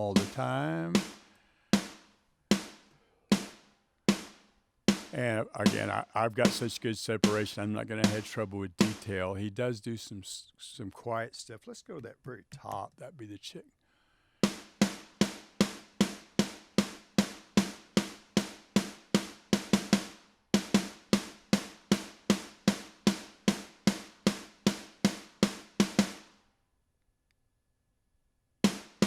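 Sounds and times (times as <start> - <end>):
snare drum hits: 0.0 - 9.1, 14.4 - 26.3, 28.7 - 29.0.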